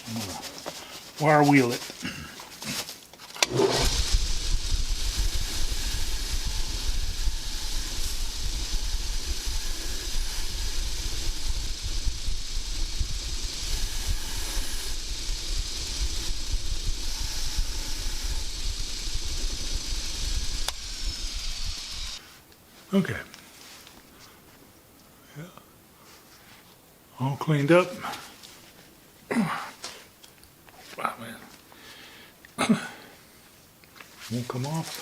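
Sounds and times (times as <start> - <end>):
wire wheel brushing metal: 3.4 - 22.2.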